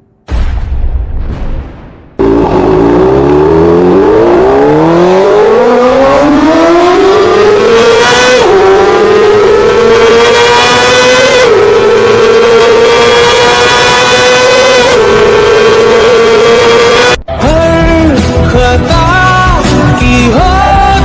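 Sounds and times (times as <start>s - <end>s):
engine revving hard: 2.2s - 17.2s.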